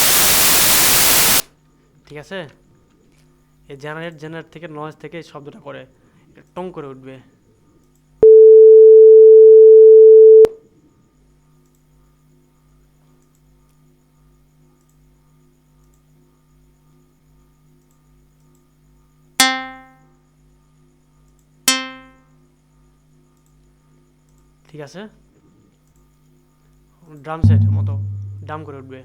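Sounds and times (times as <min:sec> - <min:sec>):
steady electronic beep: 0:27.4 - 0:29.0
synthesized plucked-string notes: 0:27.4 - 0:29.0.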